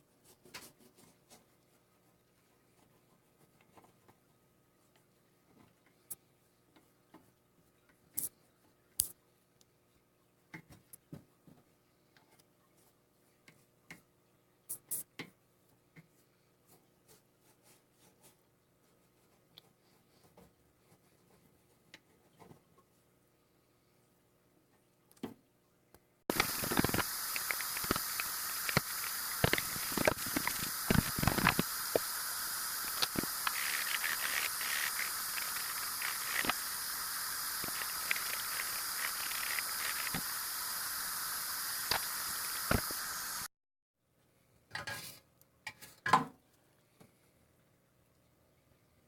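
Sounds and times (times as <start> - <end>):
spray hiss: 26.3 - 43.5.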